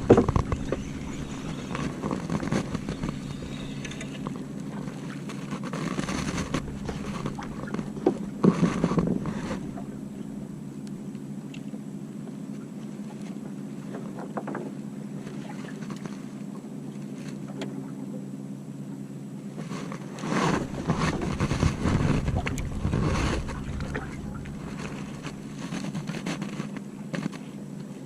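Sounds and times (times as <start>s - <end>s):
wind buffeting microphone: 0.0s - 5.2s, 5.9s - 11.1s, 20.5s - 26.2s
boat engine humming: 0.0s - 28.0s.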